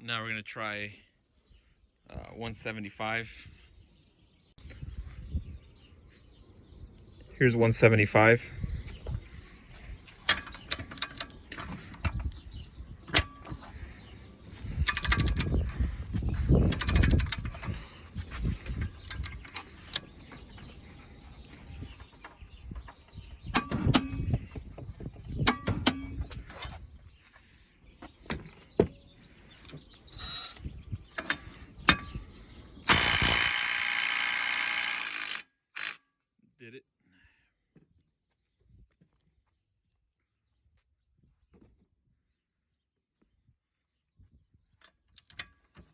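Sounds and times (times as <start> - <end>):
tools and metal clinking: 10.2 - 12.2, 14.8 - 15.7, 16.7 - 17.8, 18.7 - 20.1, 23.5 - 24.2, 25.4 - 26.7
impact wrench hammering: 32.9 - 36.0.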